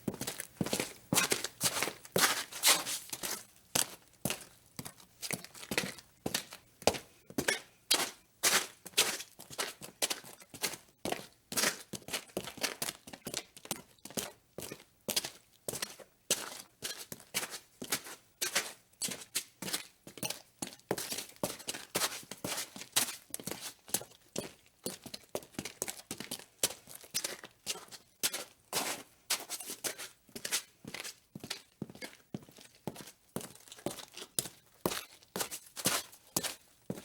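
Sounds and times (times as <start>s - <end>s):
footsteps scuffing: 0.0s - 13.0s, 20.9s - 37.0s.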